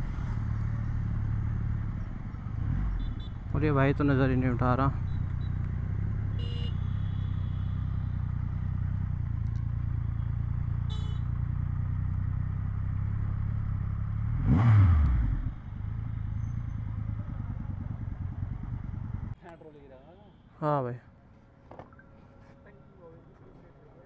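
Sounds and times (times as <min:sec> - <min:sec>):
motorcycle engine idling: 0:00.0 - 0:14.4, 0:15.3 - 0:19.4.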